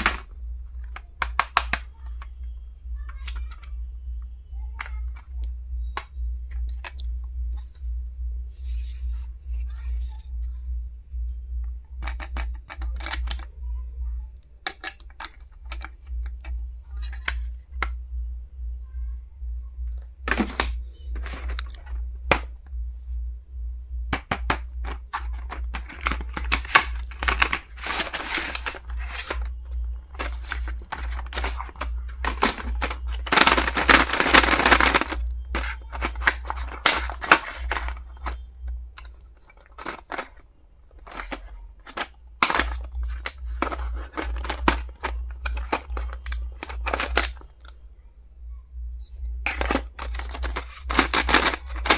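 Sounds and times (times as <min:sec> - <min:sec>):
low pulsing throb: 0:03.7 - 0:09.6, 0:17.6 - 0:20.3, 0:22.0 - 0:25.2
packaging rustling and tearing: 0:24.8 - 0:38.4, 0:39.0 - 0:47.6, 0:49.4 - 0:51.9.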